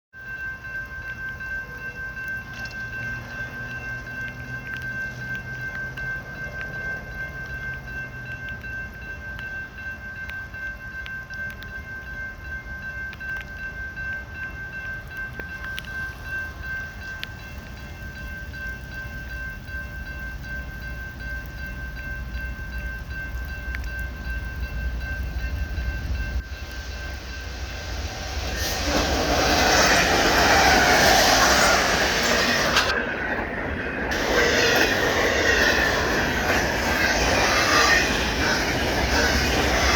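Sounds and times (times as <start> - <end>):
train rumbling and passing: 0.2 - 39.9
faint high whine: 11.7 - 39.9.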